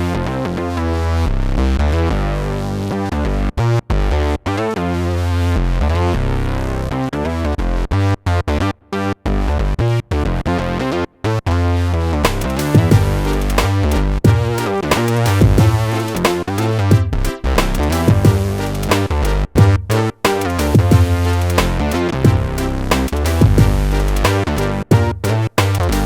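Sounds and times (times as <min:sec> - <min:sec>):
bass-heavy synthesizer notes: 0:00.0 - 0:26.0.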